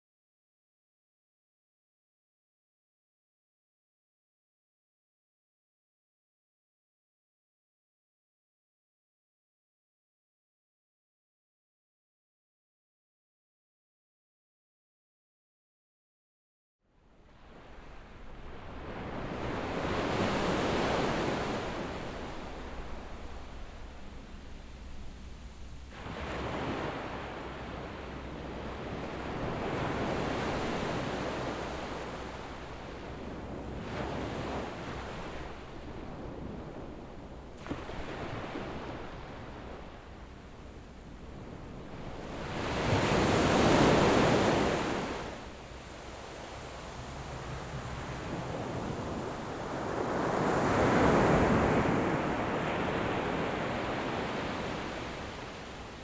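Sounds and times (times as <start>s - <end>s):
waves breaking on sandy beach: 17.6s - 56.0s.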